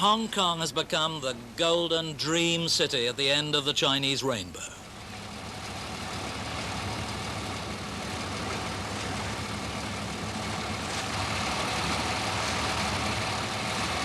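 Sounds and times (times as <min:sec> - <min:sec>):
low engine rumble: 0:00.0 - 0:14.0.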